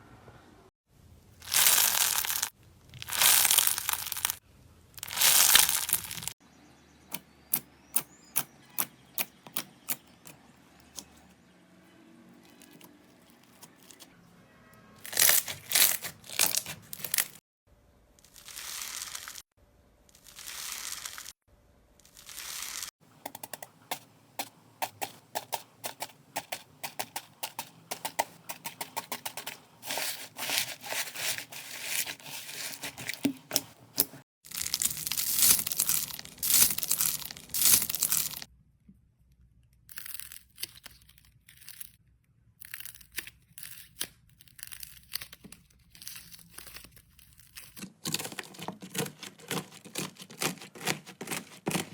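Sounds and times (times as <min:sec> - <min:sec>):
slime crackling and crinkling: 0:01.4 - 0:04.4, 0:05.0 - 0:06.4, 0:15.0 - 0:17.4, 0:18.2 - 0:19.4, 0:20.1 - 0:21.4, 0:22.0 - 0:22.9, 0:24.9 - 0:38.5, 0:42.7 - 0:51.9.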